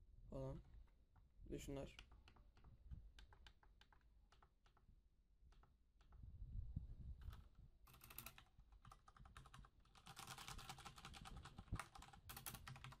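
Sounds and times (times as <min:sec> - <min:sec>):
mechanical keyboard typing: 0:01.7 - 0:04.8, 0:07.2 - 0:13.0.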